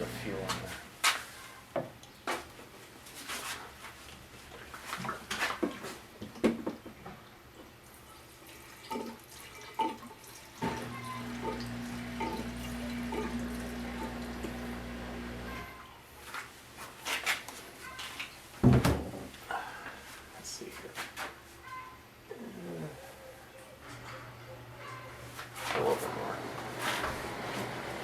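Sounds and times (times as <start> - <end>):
gasoline pouring into tank: 10.6 - 15.4.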